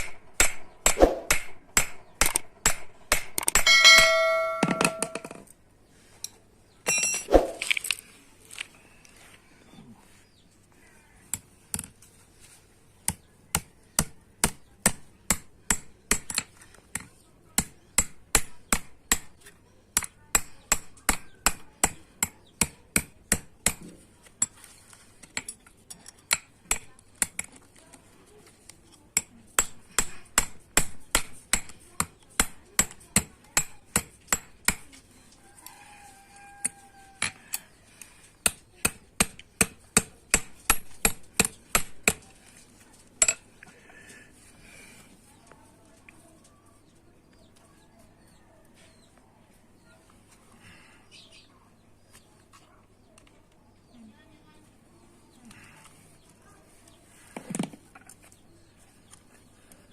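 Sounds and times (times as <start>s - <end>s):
hammer striking metal: 0.0s - 5.3s.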